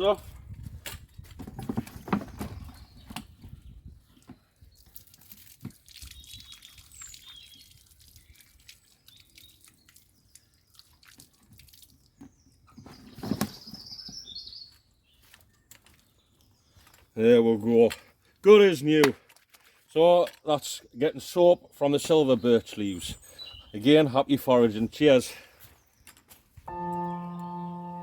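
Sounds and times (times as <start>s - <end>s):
water dripping and splashing: 4.6s - 12.8s
birds chirping: 6.1s - 11.0s, 12.0s - 19.0s, 19.9s - 28.0s.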